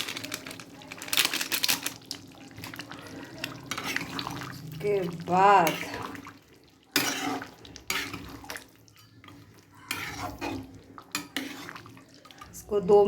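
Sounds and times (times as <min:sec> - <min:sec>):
spoon scraping a pot: 0:03.3 - 0:06.3, 0:06.9 - 0:12.6.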